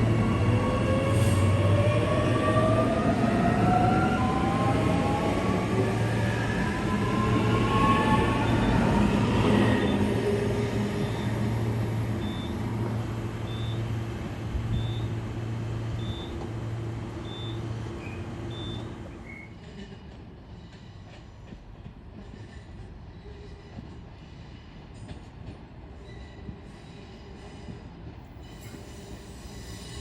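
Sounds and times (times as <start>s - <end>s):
passenger train passing: 0.0s - 30.0s.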